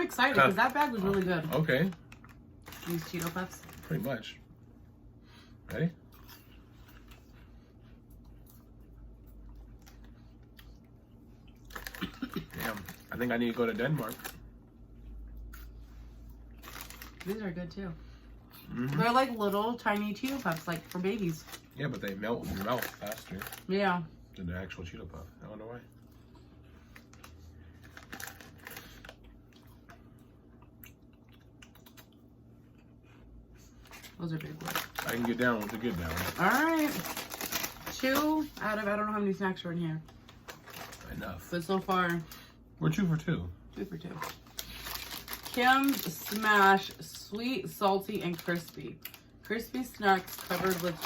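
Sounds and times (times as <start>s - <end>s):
low steady hum: 0.0s - 51.0s
crunchy snacks being chewed: 0.2s - 4.3s, 6.0s - 14.5s, 15.3s - 17.5s, 18.5s - 23.7s, 26.0s - 38.6s, 44.1s - 47.3s, 48.1s - 51.0s
person chewing crunchy snacks: 9.5s - 14.4s, 26.8s - 33.0s, 44.2s - 46.3s.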